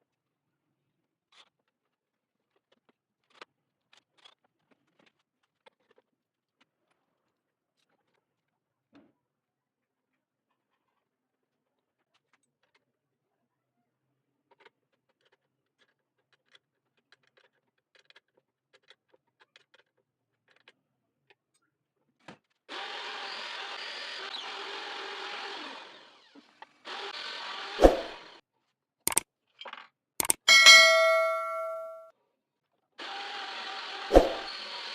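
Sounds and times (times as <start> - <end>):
small power tool running: 22.7 - 28.4, 33.0 - 34.9
ringing metal clang: 30.3 - 32.1, 34.2 - 34.5.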